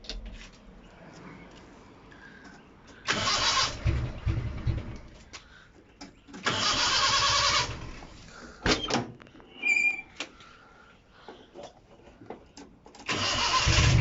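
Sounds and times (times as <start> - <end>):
starter motor cranking engine: 3.0 - 5.1, 6.4 - 8.1, 13.0 - 14.0
engine trying to fire: 3.0 - 5.2, 6.4 - 8.1, 13.0 - 14.0.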